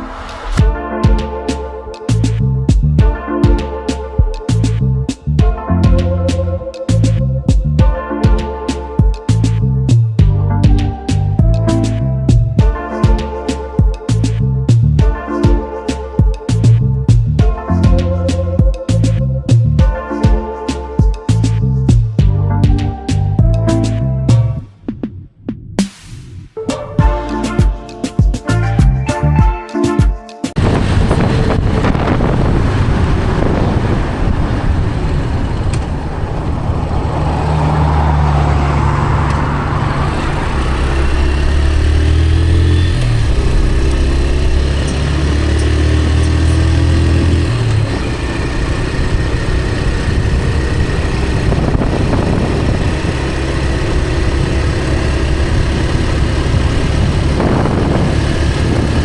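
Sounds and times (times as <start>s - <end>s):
road and wind noise: 0.0s - 0.8s, 1.5s - 3.1s, 4.0s - 7.9s, 8.7s - 12.7s, 14.1s - 15.1s, 16.5s - 19.8s, 20.8s - 25.8s, 30.5s - 59.0s
vehicle engine: 30.6s - 59.0s.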